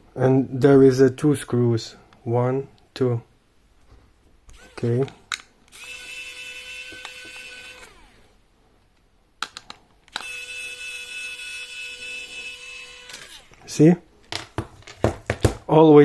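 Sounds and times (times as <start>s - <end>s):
electric screwdriver motor running: 4.5s - 5.1s, 5.7s - 8.3s, 10.1s - 13.6s.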